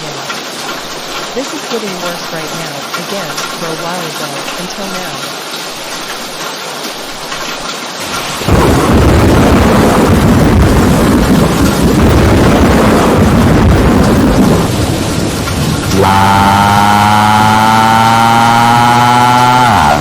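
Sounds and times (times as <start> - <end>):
steady rain: 0.0 - 20.0
thunder rumbling: 8.0 - 20.0.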